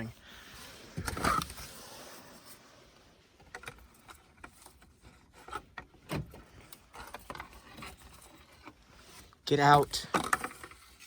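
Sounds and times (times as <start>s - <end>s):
rustling and scraping of objects: 0.0s - 11.0s
knocks of objects being moved: 10.0s - 11.0s.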